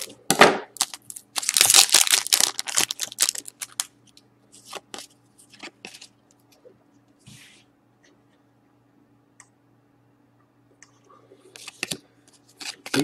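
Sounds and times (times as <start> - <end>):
wrapper ripping and crinkling: 0.8 - 3.9.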